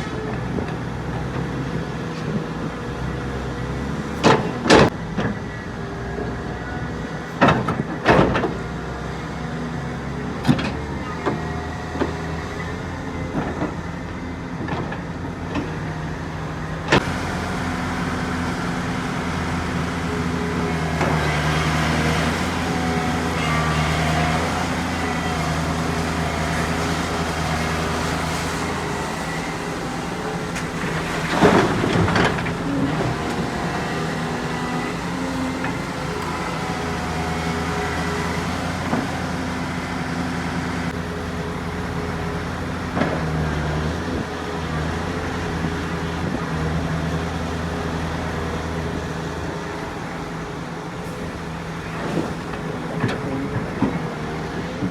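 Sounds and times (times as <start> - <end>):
diesel construction machinery running: 0.0 - 54.9
knocks and clatter: 29.9 - 34.6.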